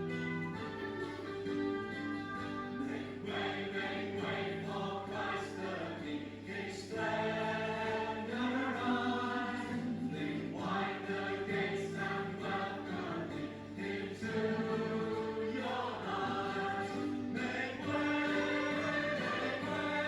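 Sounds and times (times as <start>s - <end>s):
choir singing held chords: 0.0s - 20.0s.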